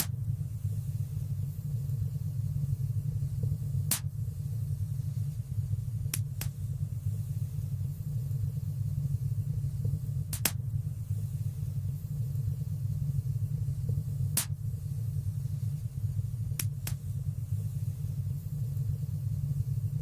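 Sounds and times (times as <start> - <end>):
fire pops and crackles: 0.0 - 0.4, 3.7 - 4.4, 6.0 - 6.9, 9.8 - 10.9, 13.6 - 15.1, 15.7 - 17.3.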